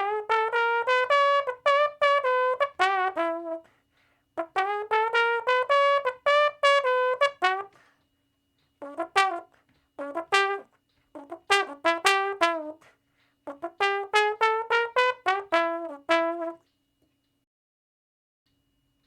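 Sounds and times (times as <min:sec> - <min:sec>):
brass instrument playing short notes: 0:00.0 - 0:03.7, 0:04.4 - 0:07.9, 0:08.8 - 0:16.6.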